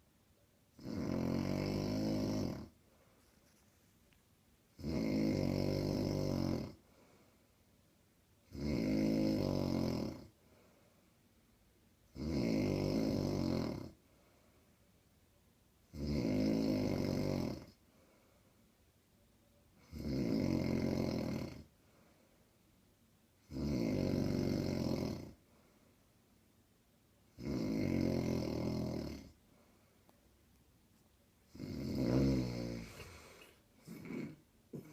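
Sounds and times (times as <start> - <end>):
woman snoring loudly: 0.8 - 2.7, 4.8 - 6.8, 8.5 - 10.3, 12.2 - 14.0, 15.9 - 17.8, 19.8 - 21.7, 23.5 - 25.4, 27.4 - 29.4, 31.5 - 34.9.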